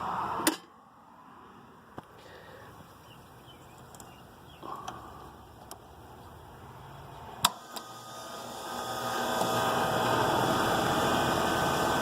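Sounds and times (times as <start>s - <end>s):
faint bird chirps: 3.0s - 5.5s
faint clicks: 3.8s - 4.2s.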